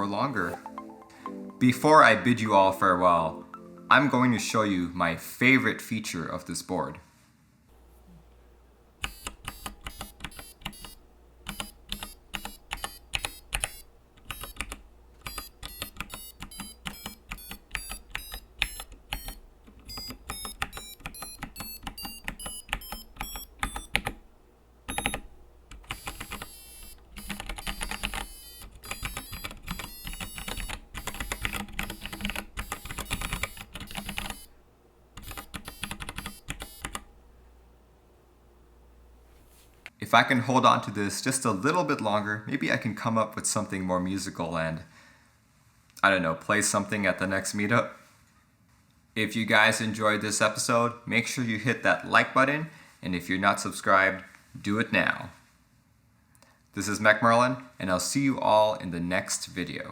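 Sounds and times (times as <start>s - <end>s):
mechanical keyboard keys clacking: 9.0s - 24.3s, 24.9s - 34.5s, 35.2s - 37.1s.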